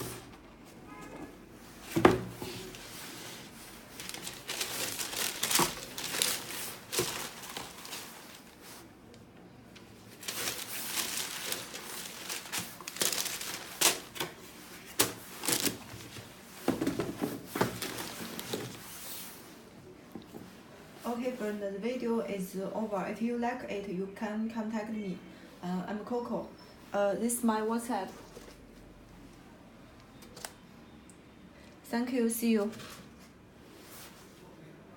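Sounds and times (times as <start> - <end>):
paper packaging crinkling: 3.7 - 8.9, 9.9 - 16.2, 17.6 - 18.8.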